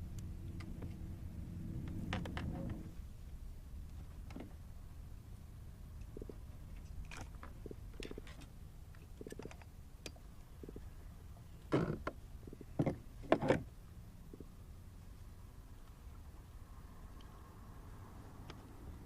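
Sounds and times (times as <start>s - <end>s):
small clicks and rattles: 6.0s - 10.8s.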